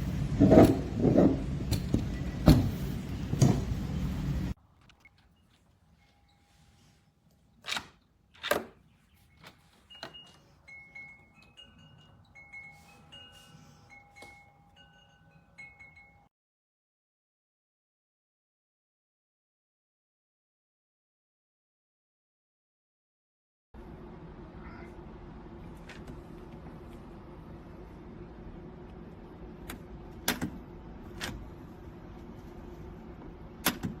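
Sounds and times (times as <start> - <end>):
steady low hum: 0.0 - 4.6, 23.8 - 34.0
high chime-like notes: 9.9 - 16.3.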